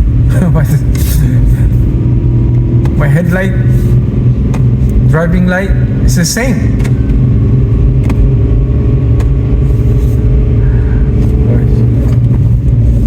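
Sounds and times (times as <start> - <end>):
truck engine running: 0.0 - 13.0.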